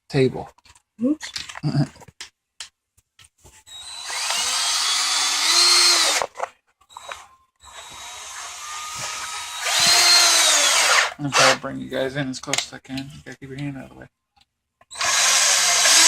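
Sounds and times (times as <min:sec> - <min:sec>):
power drill motor whining: 0:03.7 - 0:11.6, 0:14.9 - 0:16.0.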